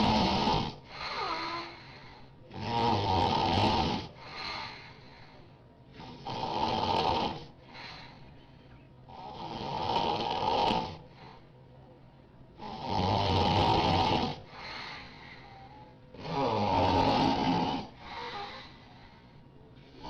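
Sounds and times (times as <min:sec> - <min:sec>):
loud snoring: 0:00.0 - 0:01.8, 0:02.5 - 0:04.2, 0:06.0 - 0:07.6, 0:09.1 - 0:11.1, 0:12.6 - 0:15.4, 0:16.1 - 0:18.6
soft breath: 0:00.8 - 0:02.5, 0:04.1 - 0:06.3, 0:07.5 - 0:09.3, 0:11.0 - 0:12.2, 0:14.4 - 0:16.5, 0:17.3 - 0:20.0.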